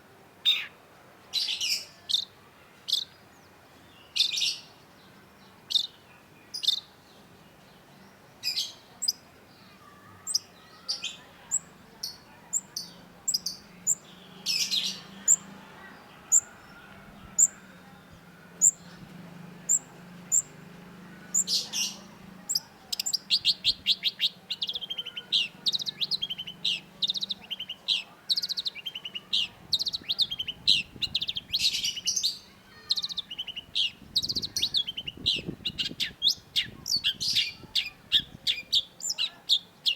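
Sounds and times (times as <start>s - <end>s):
shrike singing: 10.2s - 39.9s.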